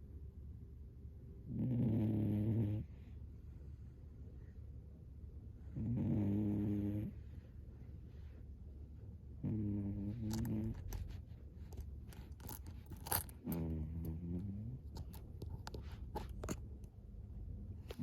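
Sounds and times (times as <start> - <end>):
cat snoring: 1.5 - 3.0, 5.7 - 7.3, 9.4 - 11.1, 13.4 - 14.9.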